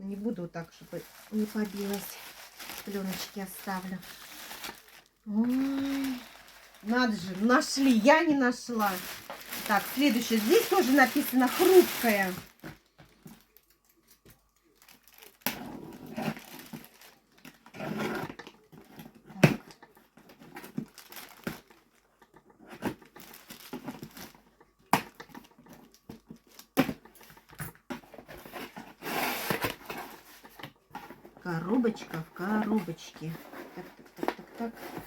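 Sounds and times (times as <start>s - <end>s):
cardboard and wrapping rustling: 0.0s - 35.0s.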